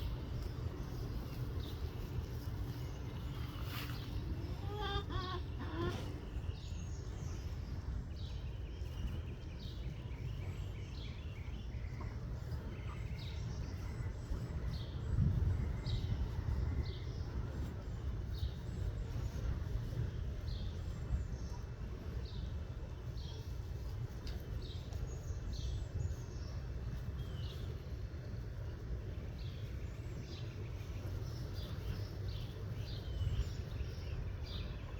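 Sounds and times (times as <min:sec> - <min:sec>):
low wind rumble: 0:00.0 - 0:34.9
chicken call: 0:04.5 - 0:06.1.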